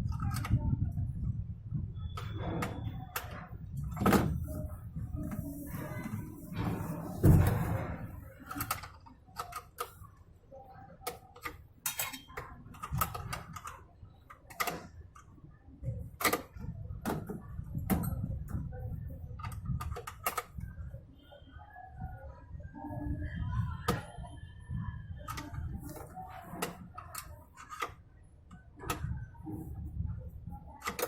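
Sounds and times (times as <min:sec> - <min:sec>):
metal parts and tools clicking: 0:11.4 - 0:13.7.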